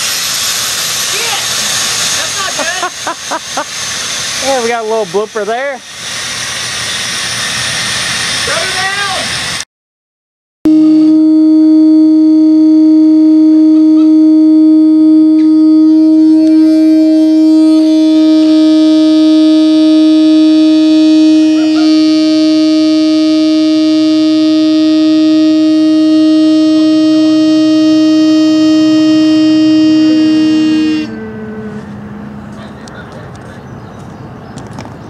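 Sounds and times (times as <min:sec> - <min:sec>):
locomotive air horn: 0:10.7 - 0:33.4.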